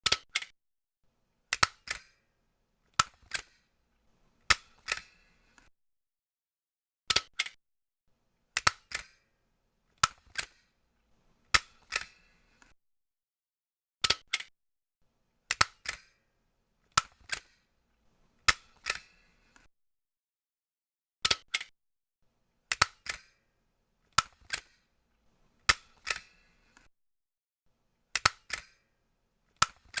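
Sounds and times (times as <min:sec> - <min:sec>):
stapler clicking: 0:22.7 - 0:23.3, 0:28.1 - 0:28.8.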